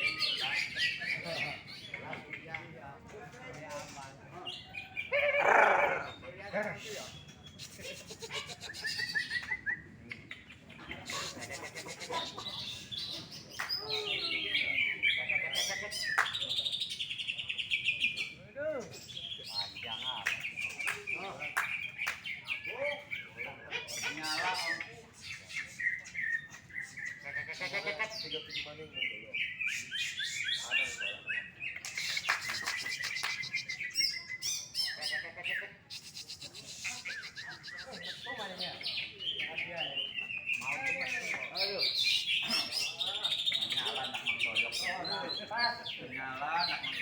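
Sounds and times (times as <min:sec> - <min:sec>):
bird chirping and trilling: 0:00.0 - 0:02.4, 0:03.6 - 0:47.0
bird whistling song: 0:07.0 - 0:10.2, 0:29.4 - 0:45.3.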